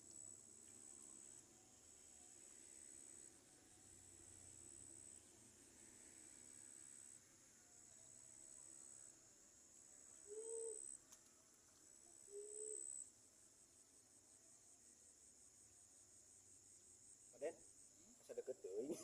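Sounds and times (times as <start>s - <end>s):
high-pitched insect trill: 0.0s - 19.0s
dove cooing: 10.2s - 10.8s.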